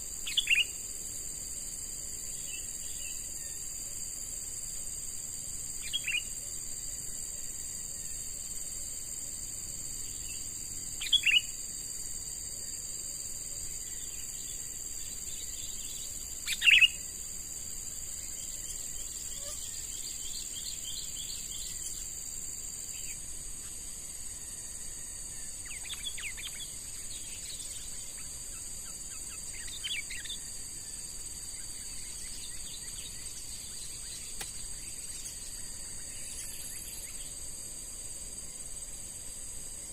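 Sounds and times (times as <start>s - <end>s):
high insect drone: 0.0s - 39.9s.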